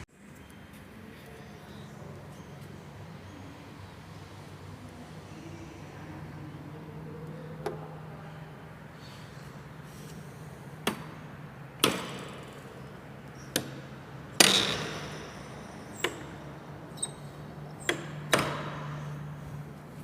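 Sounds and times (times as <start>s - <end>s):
sharp knocks and bangs echoing: 11.8s - 12.6s, 14.4s - 15.3s, 17.9s - 19.1s.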